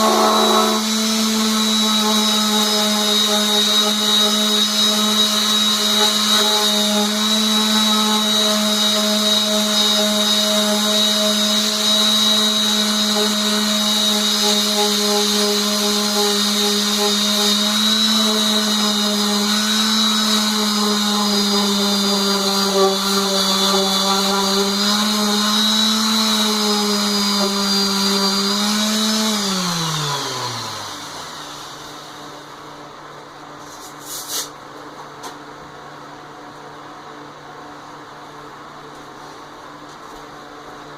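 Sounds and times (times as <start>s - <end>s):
power sander motor whining: 0.0s - 32.4s.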